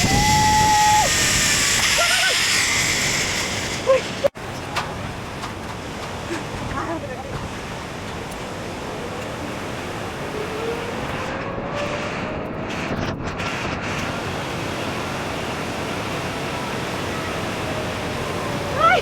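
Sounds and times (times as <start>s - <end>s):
waterfall roaring: 5.0s - 12.0s, 14.0s - 19.0s.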